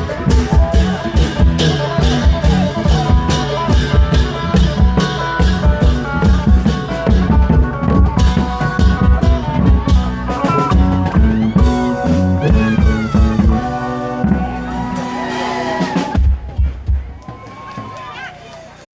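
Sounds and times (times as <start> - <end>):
plucked string melody: 0.0 - 15.1
drum beat: 0.0 - 18.5.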